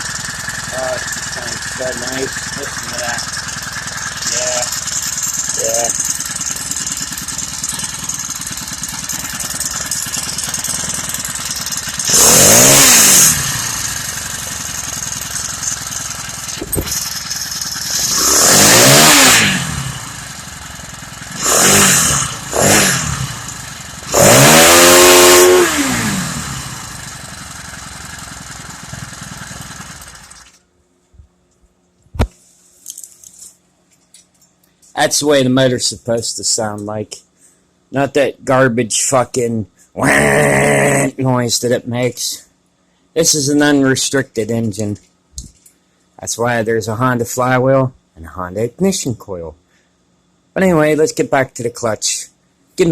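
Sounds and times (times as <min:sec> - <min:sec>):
small engine idling and revving: 0:00.0 - 0:30.6.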